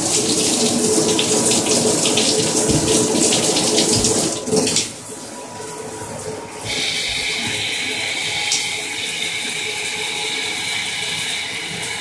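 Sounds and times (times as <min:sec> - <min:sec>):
shower spraying into bathtub: 0:06.6 - 0:12.0.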